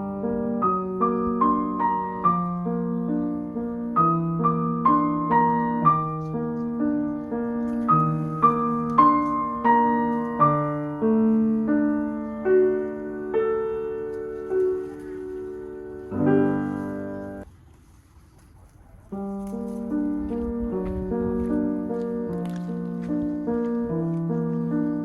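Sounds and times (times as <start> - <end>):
gentle piano melody: 0.0 - 17.5, 19.1 - 25.0.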